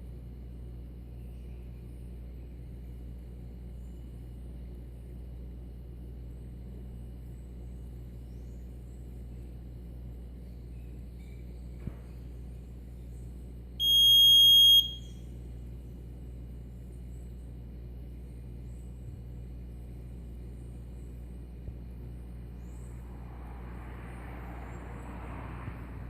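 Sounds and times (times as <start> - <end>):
low steady hum: 0.0 - 26.0
high-pitched alarm beep: 13.8 - 15.2.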